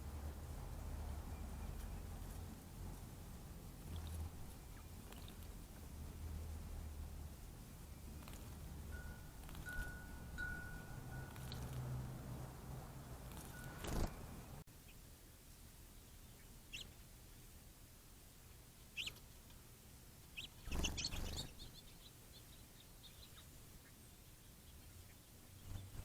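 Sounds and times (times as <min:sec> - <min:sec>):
steady low hum: 0:00.0 - 0:26.0
faint wind chime: 0:01.1 - 0:02.2, 0:07.9 - 0:14.6
finches chirping: 0:03.8 - 0:05.6, 0:07.3 - 0:11.9, 0:13.1 - 0:14.6, 0:19.0 - 0:19.2, 0:20.3 - 0:26.0.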